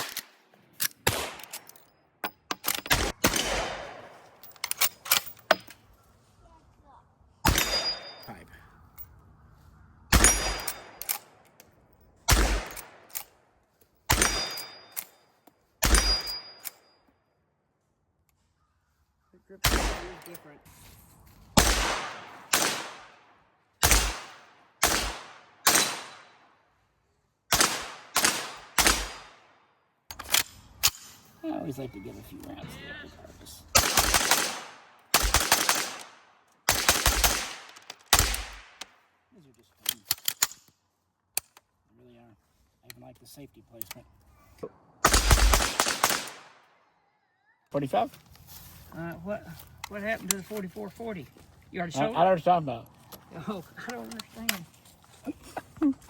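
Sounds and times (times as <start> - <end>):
pistol shots: 1.0 - 1.5, 2.9 - 4.1, 10.1 - 11.0, 12.3 - 13.1, 14.1 - 14.7, 15.8 - 16.4, 19.6 - 20.3, 21.6 - 23.2, 23.8 - 26.3, 27.5 - 29.5, 33.8 - 38.8, 45.0 - 46.6.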